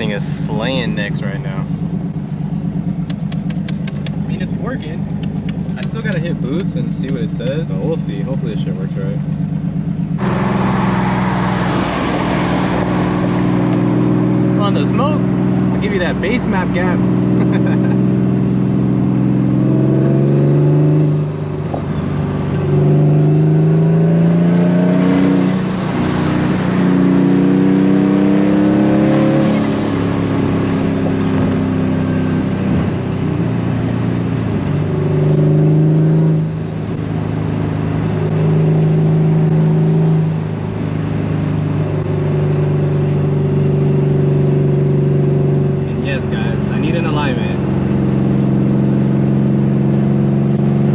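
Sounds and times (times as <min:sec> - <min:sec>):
car engine accelerating through gears: 0:00.0 - 0:50.9.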